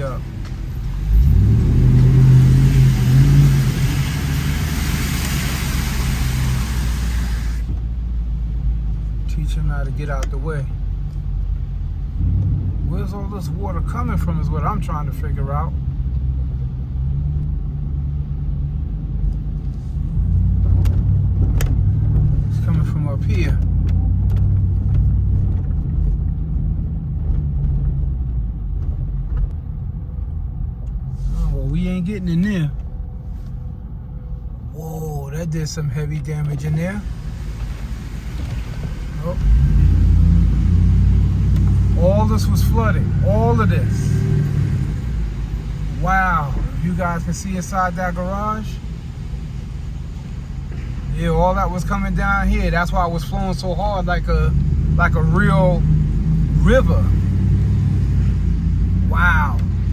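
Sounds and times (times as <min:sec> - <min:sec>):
truck engine revving: 0:00.0 - 0:07.8, 0:36.1 - 0:59.9
water spray and splashing: 0:01.6 - 0:07.8, 0:37.0 - 0:51.0.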